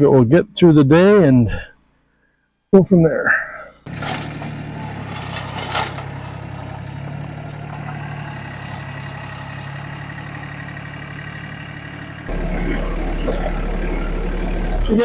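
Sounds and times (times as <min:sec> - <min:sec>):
engine idling: 0:03.8 - 0:15.0
deep engine hum: 0:03.9 - 0:15.0.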